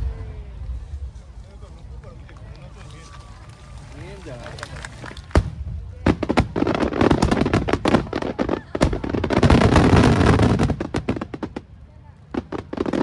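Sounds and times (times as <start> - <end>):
firework crackling: 0.0 - 13.0
firework bangs: 3.3 - 13.0.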